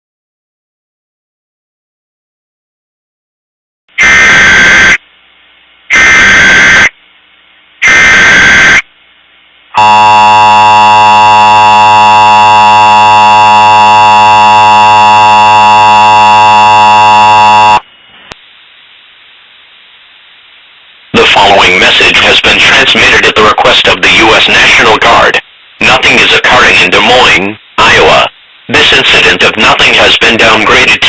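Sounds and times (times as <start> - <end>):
buzzing attention tone: 9.8 - 17.8.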